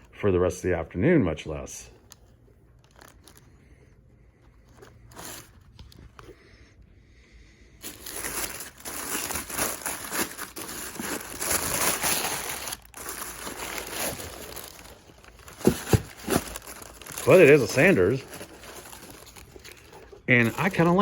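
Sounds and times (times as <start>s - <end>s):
packing material crinkling: 2.0s - 3.8s, 4.5s - 6.4s, 7.8s - 21.0s.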